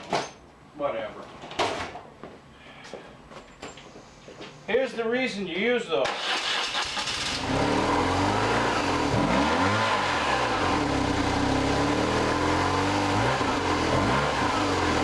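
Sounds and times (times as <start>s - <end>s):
motorcycle engine running: 7.0s - 15.0s.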